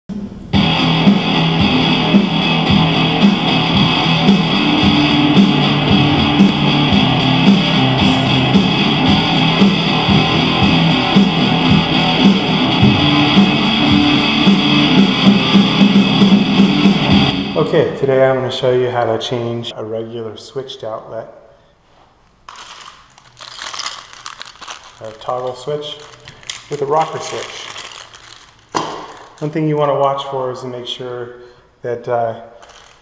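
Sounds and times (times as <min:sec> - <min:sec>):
guitar music with steady beat: 0:00.6 - 0:17.6.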